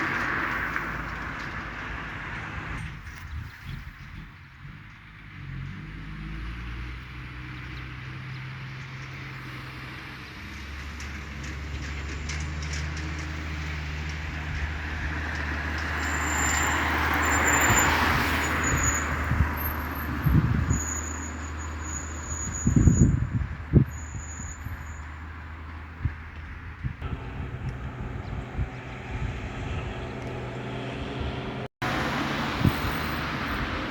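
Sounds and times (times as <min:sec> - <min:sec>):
vehicle engine humming: 0:04.6 - 0:33.9
vehicle passing close: 0:24.6 - 0:33.9.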